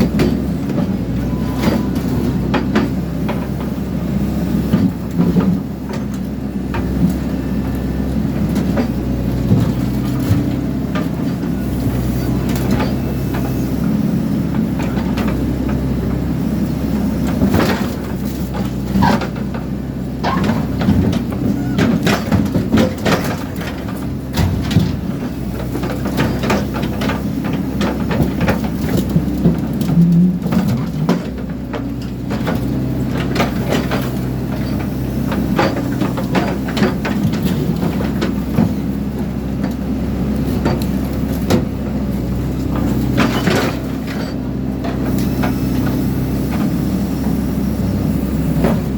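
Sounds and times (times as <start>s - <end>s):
excavator engine under load: 0.0s - 48.9s
metal clanking and crushing: 20.2s - 38.9s, 40.5s - 45.9s.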